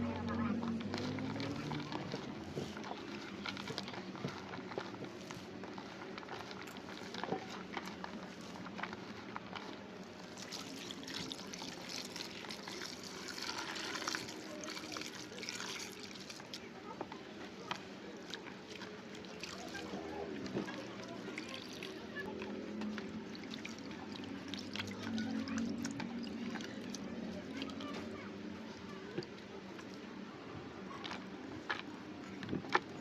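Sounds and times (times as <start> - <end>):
liquid trickling: 5.8 - 16.9, 18.1 - 30.0.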